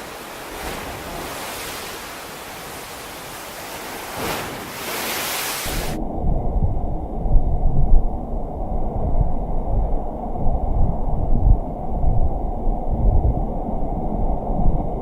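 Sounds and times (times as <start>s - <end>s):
waves breaking: 0.0s - 6.0s
wind buffeting microphone: 0.0s - 15.0s
wind rushing: 0.0s - 15.0s.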